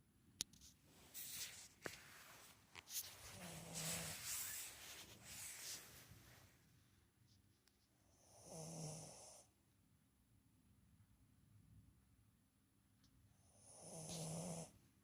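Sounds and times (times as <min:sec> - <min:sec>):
person snoring: 0:13.7 - 0:14.8.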